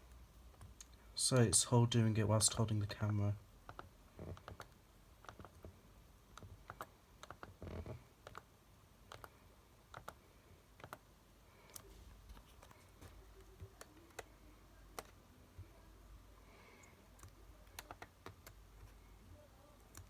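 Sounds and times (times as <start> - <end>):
mouse and keyboard clicking: 3.7 - 5.7, 6.3 - 7.6, 8.2 - 8.5, 9.1 - 10.2, 10.8 - 11.0, 13.4 - 14.3, 14.9 - 15.2, 16.8 - 19.0.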